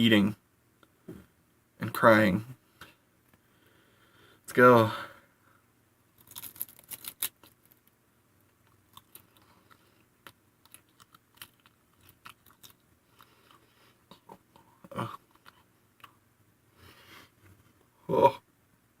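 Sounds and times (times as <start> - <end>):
seaweed snack crunching: 6.2 - 7.6, 8.6 - 13.6
chewing crackles: 8.5 - 16.2.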